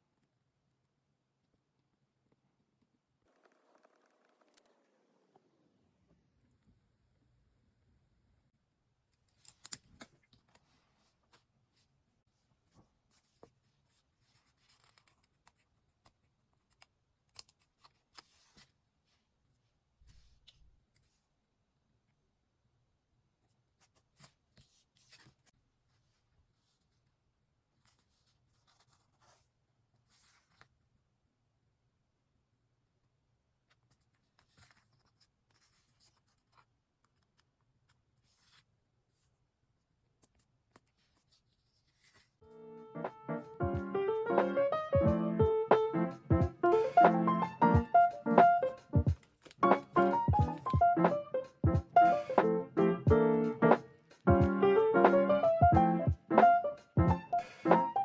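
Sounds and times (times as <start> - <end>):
paper rustling: 9.2 - 19.3, 23.5 - 27.2, 27.8 - 30.8, 33.7 - 39.4, 40.1 - 42.4, 48.0 - 50.8.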